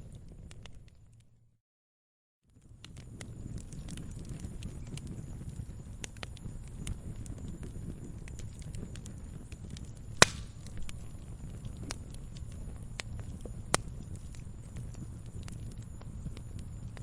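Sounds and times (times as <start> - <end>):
campfire crackling: 0.0 - 1.4, 2.5 - 17.0
loud sharp pops from logs: 10.2 - 10.9.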